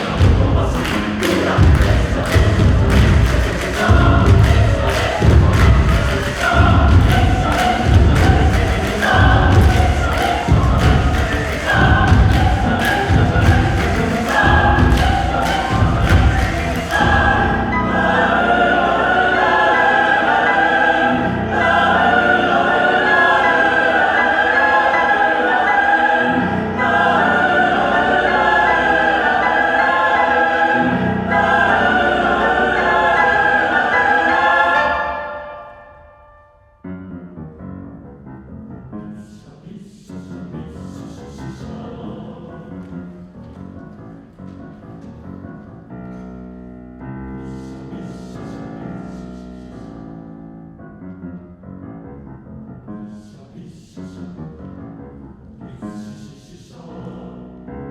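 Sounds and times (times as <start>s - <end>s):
heavy low accents: 0.0s - 25.2s
mixed choir singing: 0.0s - 35.9s, 39.2s - 44.7s, 47.4s - 50.0s, 53.1s - 54.2s, 55.8s - 57.9s
piano playing: 0.0s - 38.9s.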